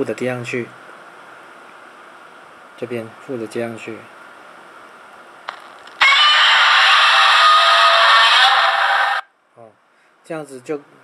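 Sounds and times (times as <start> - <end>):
monster roar from small speaker: 6.0 - 9.2.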